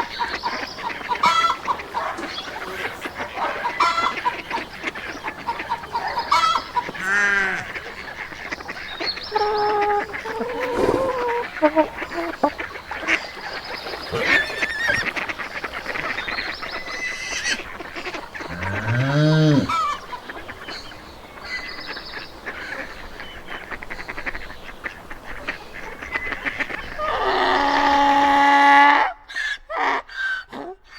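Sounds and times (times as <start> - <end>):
geese honking: 0.0 - 30.4
cow mooing: 14.1 - 15.1, 18.5 - 19.8.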